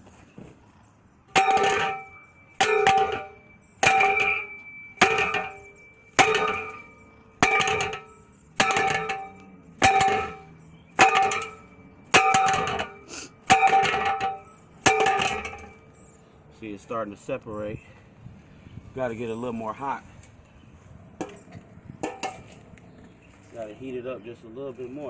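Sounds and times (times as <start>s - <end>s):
metal pole clanging on ground: 1.3s - 16.2s, 21.2s - 22.6s.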